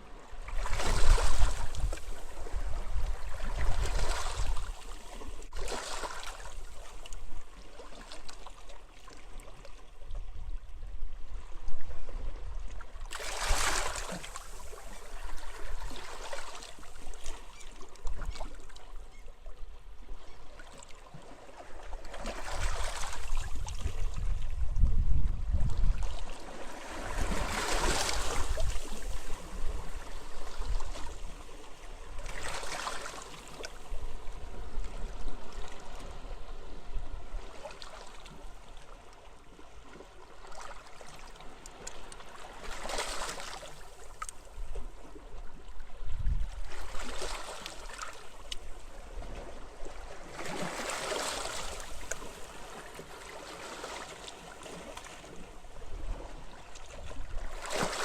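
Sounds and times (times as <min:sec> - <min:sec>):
sea waves on a beach: 0:00.0 - 0:58.0
wind rumbling on microphone: 0:00.3 - 0:05.6, 0:22.4 - 0:31.5, 0:44.6 - 0:47.1.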